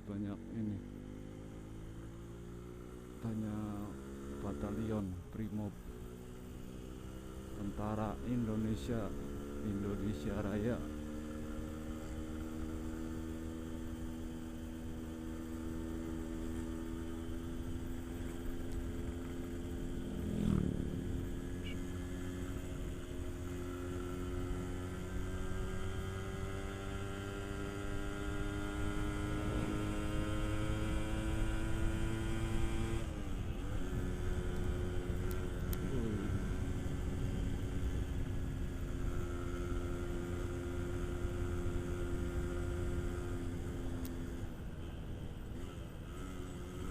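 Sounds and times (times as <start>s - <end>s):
two-stroke motorcycle engine running: 0.0s - 44.8s
constant low rumble: 7.4s - 26.3s, 30.8s - 46.9s.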